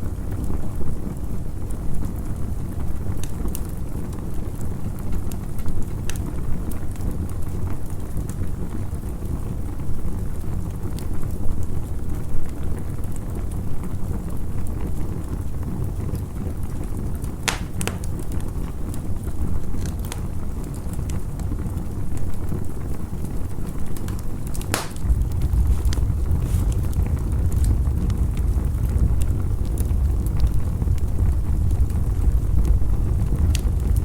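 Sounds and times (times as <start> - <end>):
campfire crackling: 0.0 - 34.0
sharp popping of fire: 12.4 - 34.0
low rumble: 24.7 - 34.0.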